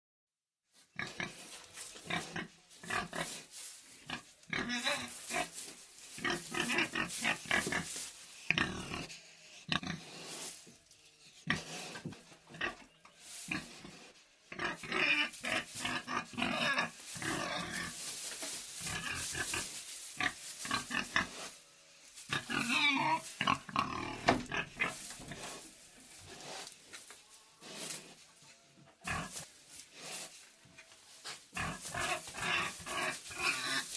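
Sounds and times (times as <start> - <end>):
pig grunting: 4.1 - 5.6, 6.2 - 10.3, 14.5 - 18.0, 22.3 - 25.7.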